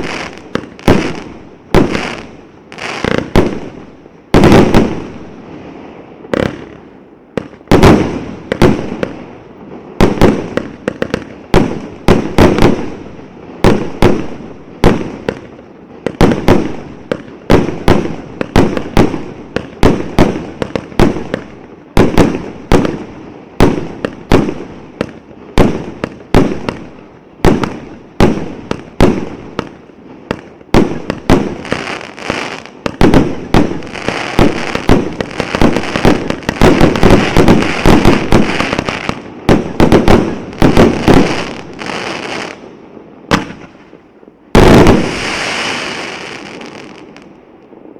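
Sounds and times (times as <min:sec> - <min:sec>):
firework crackling hiss: 0:00.0 - 0:03.8, 0:30.3 - 0:42.7, 0:44.6 - 0:47.2
firework shots and aerial bursts: 0:00.0 - 0:47.9.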